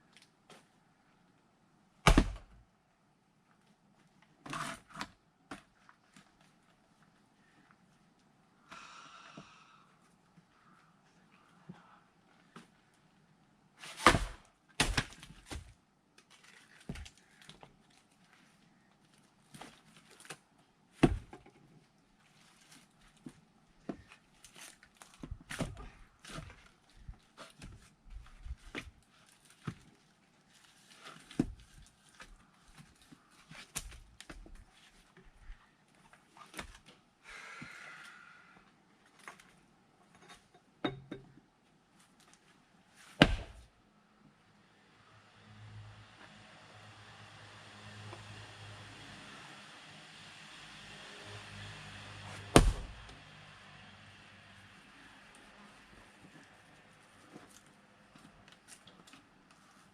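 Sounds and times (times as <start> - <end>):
axe splitting firewood: 2.1 - 2.4, 13.8 - 15.8, 21.0 - 21.4, 23.9 - 27.8, 43.1 - 43.6, 52.2 - 53.2.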